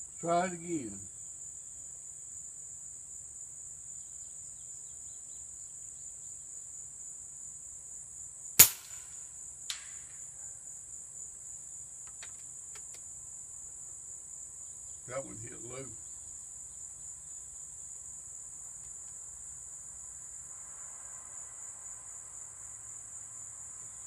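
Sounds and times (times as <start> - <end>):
air rifle shot crack: 8.6 - 10.0.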